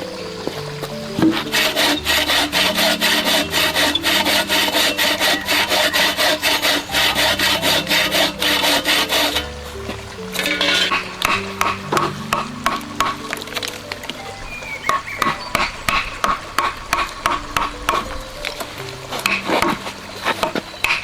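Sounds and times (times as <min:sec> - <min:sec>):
hand saw cutting wood: 0:01.2 - 0:09.4, 0:10.4 - 0:13.3, 0:14.9 - 0:18.2, 0:19.1 - 0:21.0.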